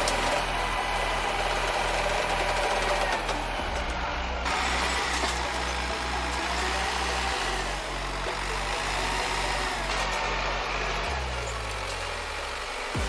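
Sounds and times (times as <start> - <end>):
background music: 0.0 - 13.0
heavy vehicle engine running: 0.0 - 13.0.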